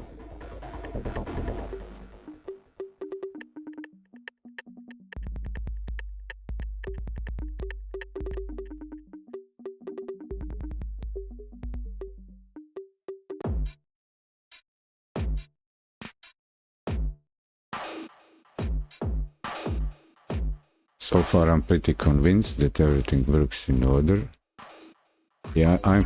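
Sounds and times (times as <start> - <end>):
deep bass notes: 0.0 - 2.3, 21.0 - 24.2.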